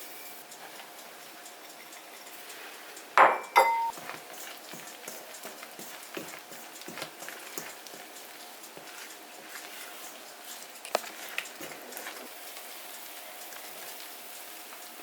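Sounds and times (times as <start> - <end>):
dishes clattering: 3.2 - 4.1.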